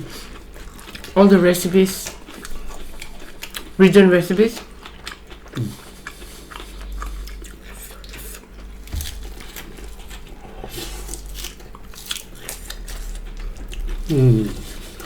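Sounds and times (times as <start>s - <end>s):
chewing and biting food: 0.0s - 15.0s
small crunches: 4.6s - 15.0s.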